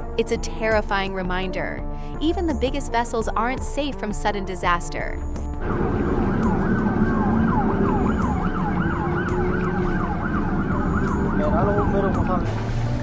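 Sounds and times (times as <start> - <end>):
low rumble: 5.5 - 13.0
siren wailing: 5.6 - 13.0.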